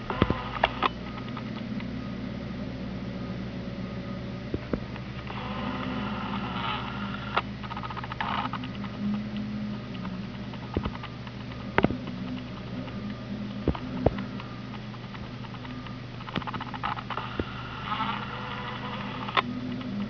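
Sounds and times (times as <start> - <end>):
car engine running: 0.0 - 20.0
scratchy scraping: 5.2 - 20.0.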